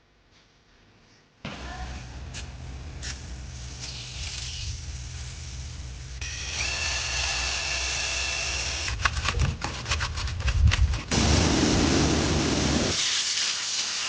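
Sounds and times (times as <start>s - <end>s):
hissing spray with whine: 1.6s - 6.7s, 11.1s - 14.0s.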